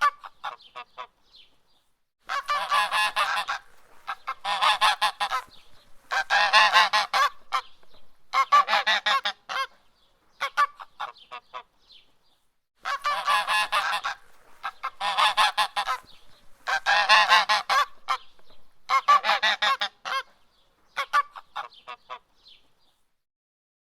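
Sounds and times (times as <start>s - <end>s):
goose honking: 2.3s - 7.7s, 8.3s - 9.7s, 12.8s - 18.3s, 18.9s - 20.3s.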